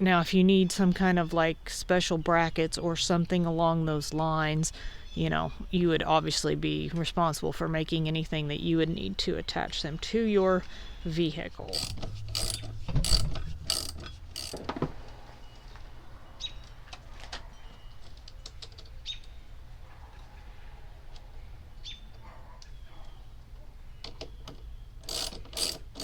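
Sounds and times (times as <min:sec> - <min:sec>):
steady low rumble: 0:11.5 - 0:16.4
ratchet wrench clicking: 0:11.7 - 0:14.7, 0:25.0 - 0:26.0.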